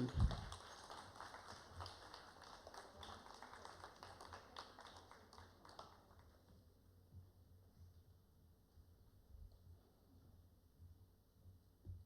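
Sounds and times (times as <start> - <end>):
audience clapping: 0.0 - 6.5.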